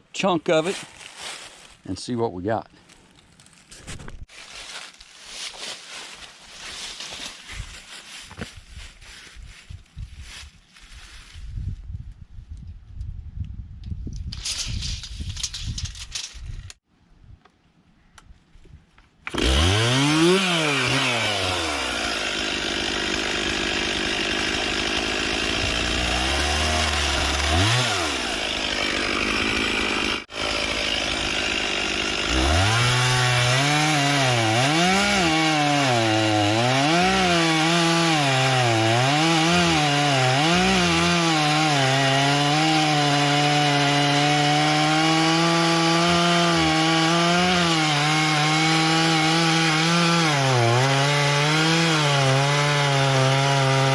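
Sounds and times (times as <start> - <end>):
chainsaw cutting log: 19.2 - 53.9.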